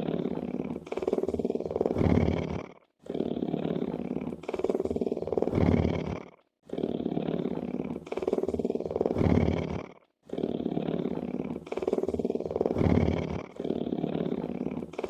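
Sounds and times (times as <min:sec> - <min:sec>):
big cat purring: 0:00.0 - 0:15.0.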